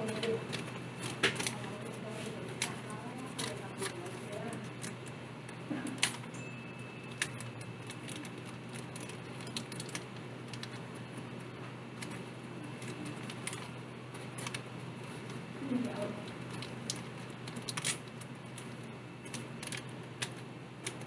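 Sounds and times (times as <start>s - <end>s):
small parts and tools clicking: 16.2s - 21.0s.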